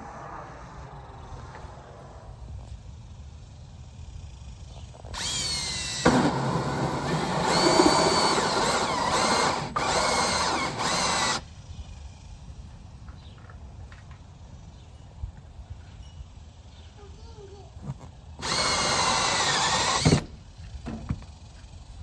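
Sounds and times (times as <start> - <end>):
power drill whining: 5.0 - 11.5, 18.4 - 20.5.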